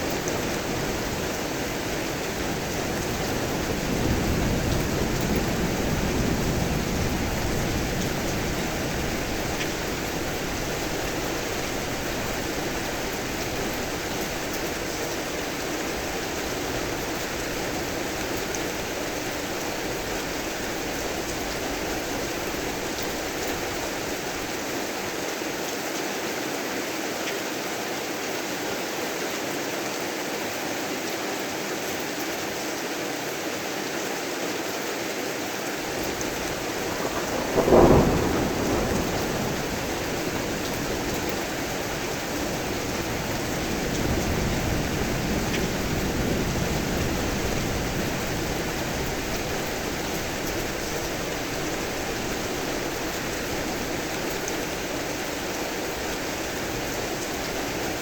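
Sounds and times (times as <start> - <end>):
thunder rumble: 0.0 - 24.5, 35.8 - 58.0
heavy rain falling: 0.0 - 58.0.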